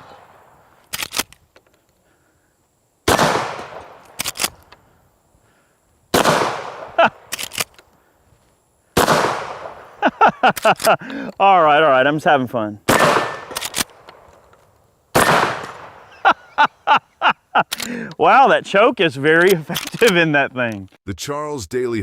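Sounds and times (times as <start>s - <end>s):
shotgun shots: 3.0s - 4.6s, 6.1s - 7.7s, 9.0s - 10.0s, 12.9s - 14.4s, 15.1s - 16.2s.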